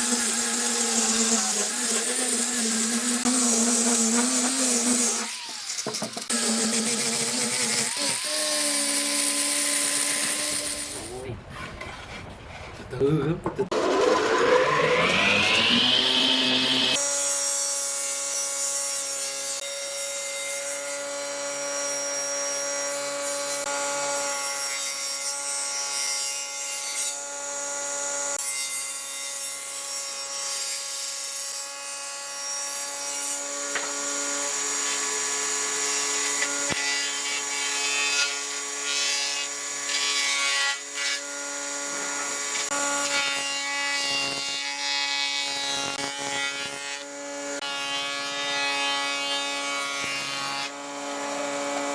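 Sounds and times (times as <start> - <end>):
power tool motor whine: 0.0 - 11.1, 13.7 - 17.2.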